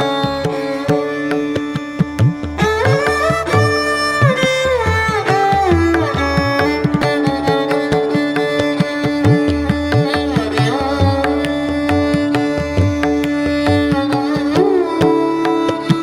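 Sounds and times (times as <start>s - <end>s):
plucked string melody: 0.0s - 16.0s.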